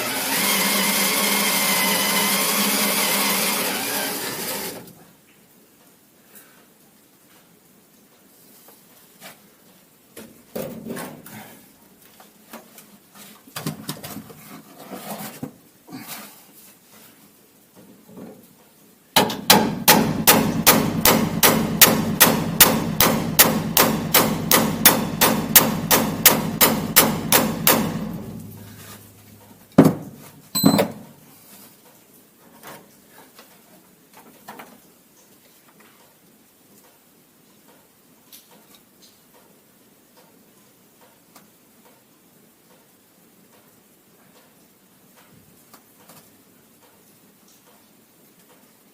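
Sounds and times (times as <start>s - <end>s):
hammer striking metal: 19.2s - 28.6s
tool handling knocks: 29.7s - 31.2s.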